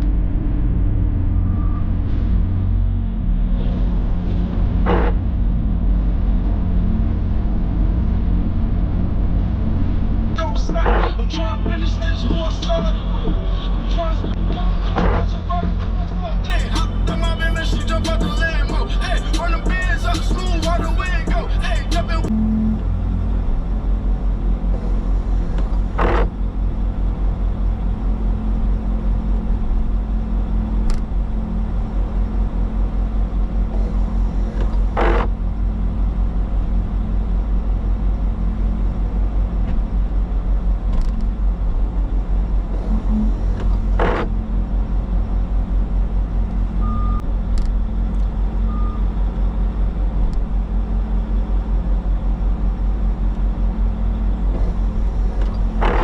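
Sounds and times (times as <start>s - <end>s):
diesel engine running: 0.0s - 56.0s
faint beeps: 1.3s - 2.0s, 46.8s - 47.2s, 48.6s - 49.1s.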